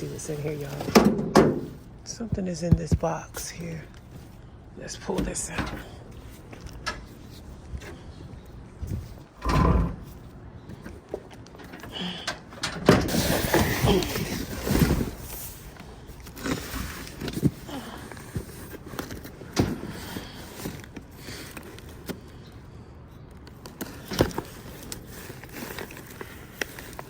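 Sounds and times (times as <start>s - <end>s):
box scraping and rustling: 13.0s - 22.7s, 23.7s - 27.0s.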